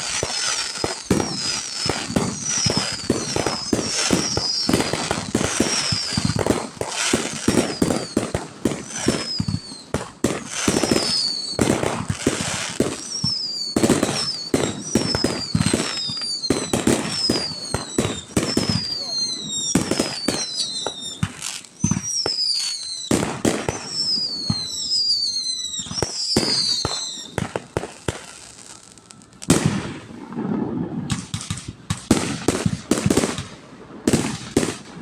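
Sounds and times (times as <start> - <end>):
high whistles falling in pitch: 0.0 - 9.9, 10.6 - 27.4
fireworks bangs and crackling: 0.0 - 35.0.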